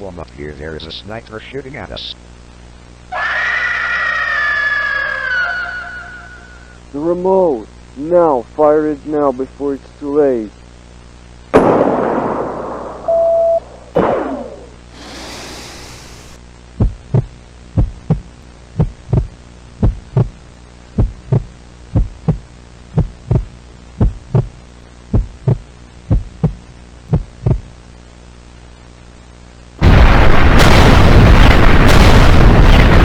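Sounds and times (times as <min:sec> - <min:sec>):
steady low hum: 0:00.0 - 0:03.2, 0:04.9 - 0:33.0
loud explosion blast: 0:11.6 - 0:13.1, 0:13.9 - 0:16.4, 0:29.8 - 0:33.0
heartbeat thumps: 0:16.8 - 0:20.4, 0:21.0 - 0:27.8.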